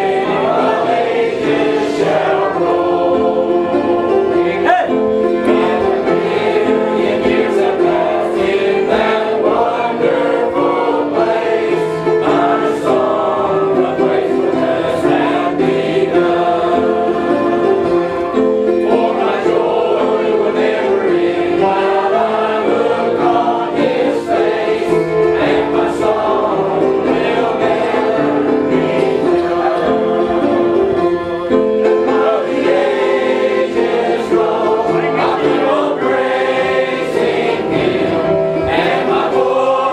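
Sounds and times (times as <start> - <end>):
group singing a hymn: 0.0 - 39.9
instruments playing along: 0.0 - 39.9.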